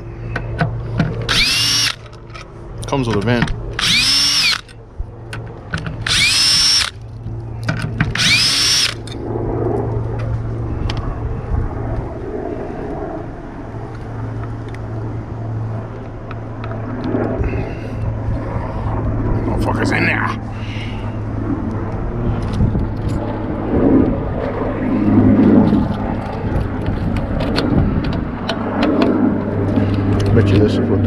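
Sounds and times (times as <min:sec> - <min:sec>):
steady hum: 0:00.0 - 0:31.0
cordless power drill spinning: 0:00.4 - 0:02.5, 0:03.7 - 0:04.8, 0:05.7 - 0:09.2.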